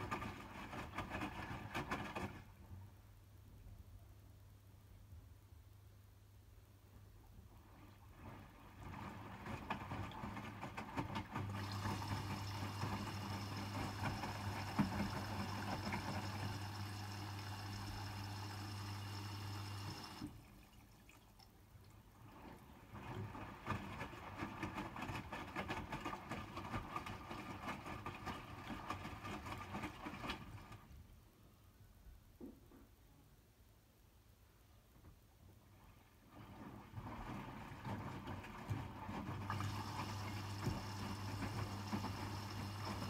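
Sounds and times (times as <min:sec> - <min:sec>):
water rushing into washing machine: 0:00.0 - 0:02.6, 0:07.4 - 0:31.0, 0:35.7 - 0:43.0
low electrical hum: 0:02.3 - 0:24.4.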